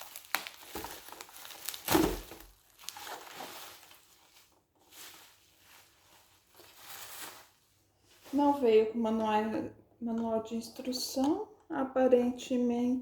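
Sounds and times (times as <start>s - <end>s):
packaging rustling: 0.0s - 8.4s.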